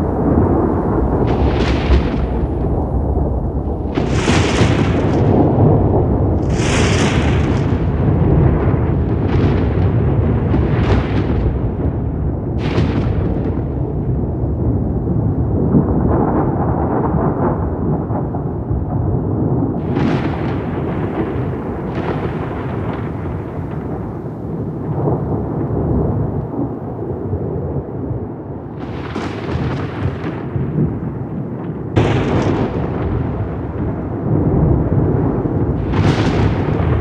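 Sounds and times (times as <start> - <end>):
rolling thunder: 0.0 - 37.0
thunder cracks: 0.0 - 37.0.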